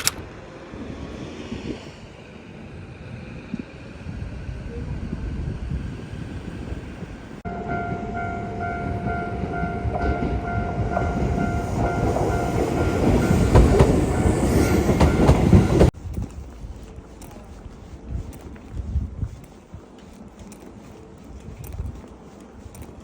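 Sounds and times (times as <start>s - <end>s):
train whine: 0.0s - 16.0s
train rumble and clatter: 0.0s - 19.4s.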